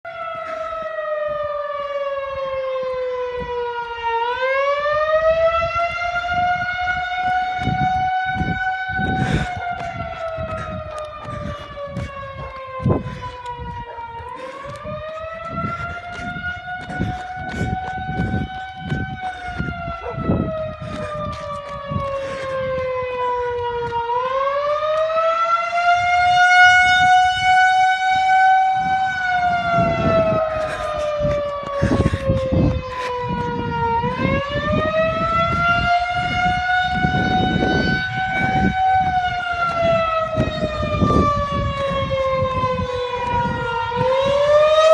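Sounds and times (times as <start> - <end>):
warning siren slow wail: 0.1 - 44.9
low rumbling noise: 6.0 - 24.2.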